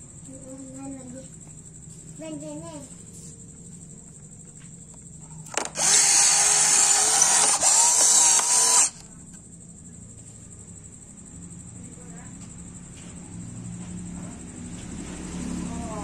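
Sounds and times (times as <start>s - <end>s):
electric gear motor whirring: 5.5s - 9.1s.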